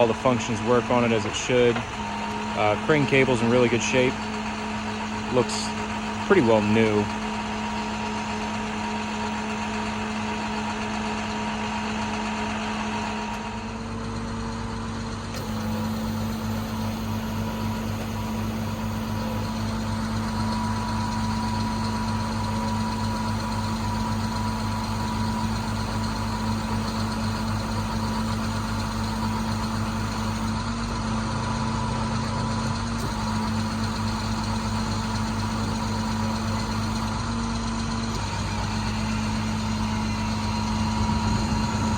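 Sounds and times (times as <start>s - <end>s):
diesel engine idling: 0.0s - 41.9s
steady hum: 15.3s - 30.6s, 33.0s - 37.2s.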